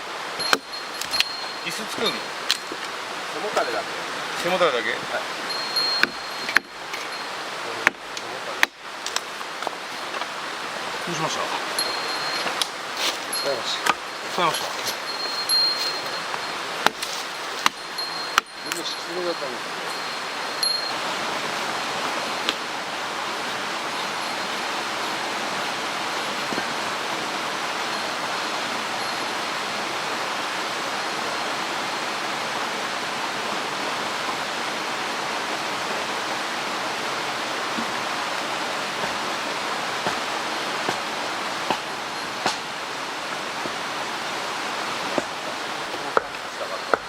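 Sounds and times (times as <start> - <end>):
mountain stream rushing: 0.0 - 47.0.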